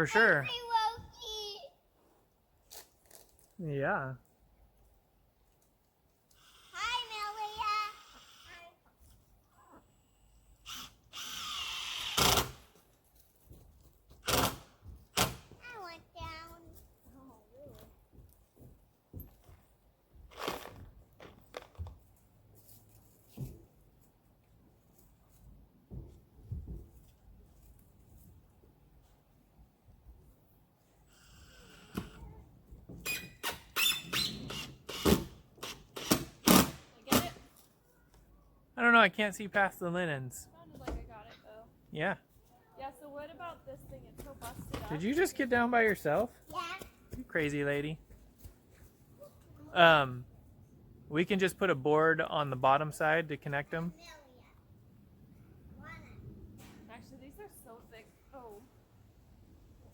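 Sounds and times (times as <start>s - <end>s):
power drill driving a screw: 10.7s - 12.6s, 33.2s - 36.8s
short high squeak: 33.0s - 35.2s.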